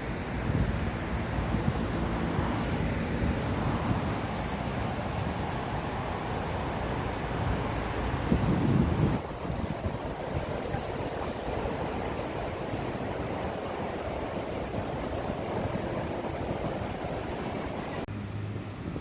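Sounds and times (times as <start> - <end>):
sea waves washing: 0.0 - 18.1
wind buffeting microphone: 0.0 - 19.0.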